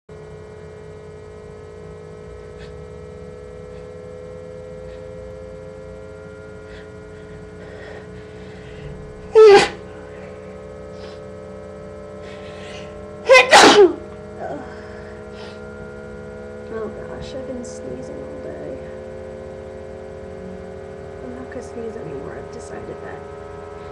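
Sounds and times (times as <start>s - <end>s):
steady background hum: 0.1s - 23.9s
person sneezing: 9.4s - 9.8s, 13.3s - 14.0s.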